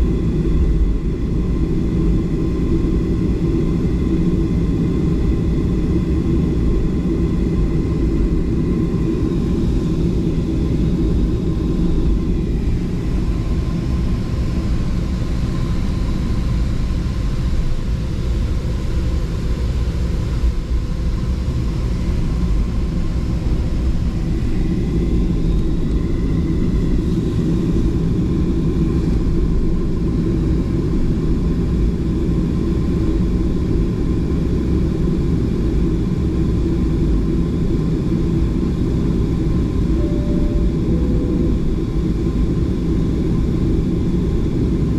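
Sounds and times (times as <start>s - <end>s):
faint jet engine whine: 0.0s - 44.9s.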